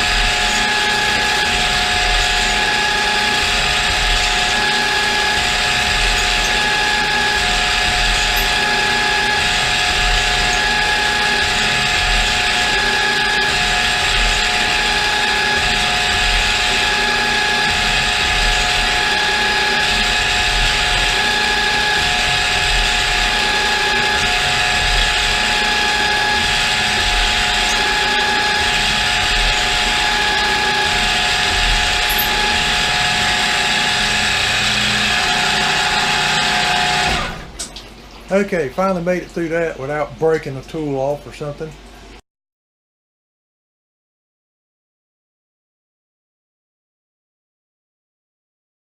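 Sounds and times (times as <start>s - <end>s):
milling machine cutting metal: 0.0s - 37.9s
spindle whine: 0.0s - 38.4s.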